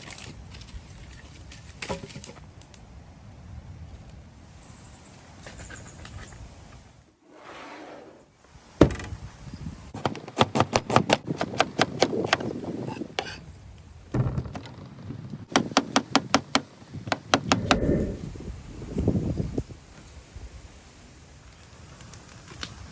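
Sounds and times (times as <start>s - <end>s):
sharp knocks: 14.2s - 17.9s.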